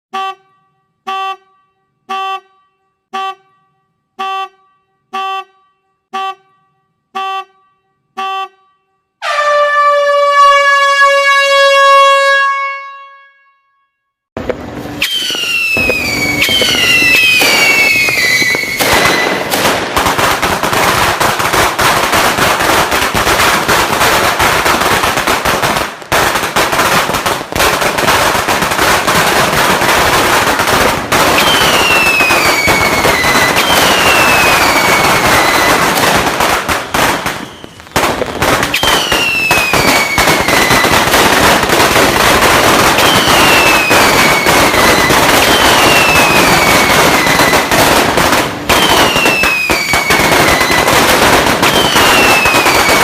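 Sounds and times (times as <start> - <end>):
firecracker string crackling: 14.4 - 53.0
falling firework whistles: 14.8 - 20.9, 29.6 - 41.8, 42.4 - 53.0.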